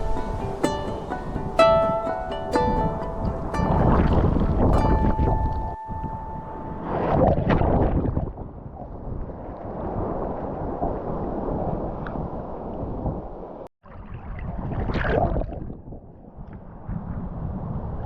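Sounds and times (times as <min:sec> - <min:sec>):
surf on a beach: 0:00.0 - 0:13.6
wind buffeting microphone: 0:00.0 - 0:18.0.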